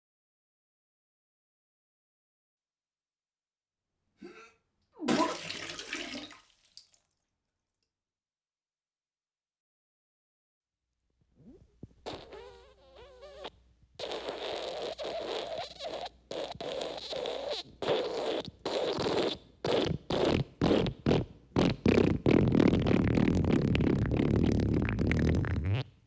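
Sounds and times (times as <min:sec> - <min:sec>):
comedy fart sound effect: 0:05.0 - 0:05.7, 0:11.4 - 0:26.0.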